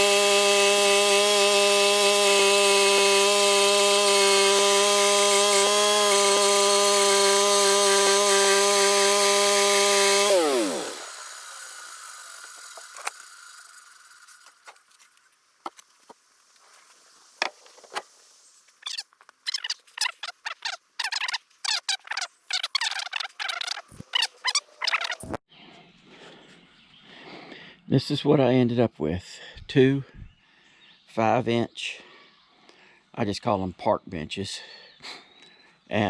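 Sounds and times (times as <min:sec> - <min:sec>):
bandsaw mill engine running: 0:00.0 - 0:14.8.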